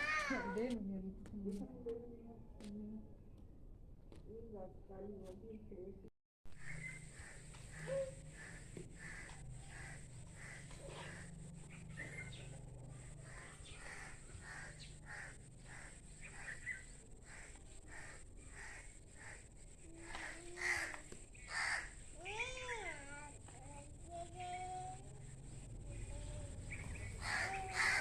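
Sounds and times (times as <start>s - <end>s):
crows cawing: 6.6s - 11.3s, 13.3s - 16.6s, 17.2s - 19.5s, 20.1s - 22.0s, 27.2s - 28.0s
drawn-out rising and falling call: 6.6s - 19.4s, 25.2s - 28.0s.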